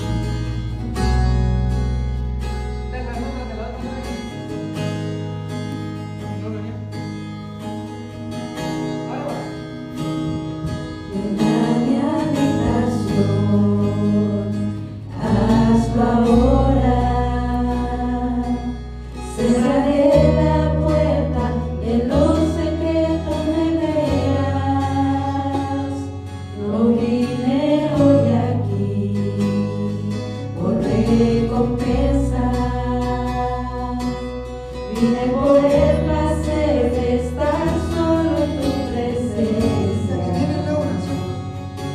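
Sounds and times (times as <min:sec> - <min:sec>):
held bass notes: 0:00.0 - 0:41.9
voices singing worship music: 0:10.6 - 0:41.9.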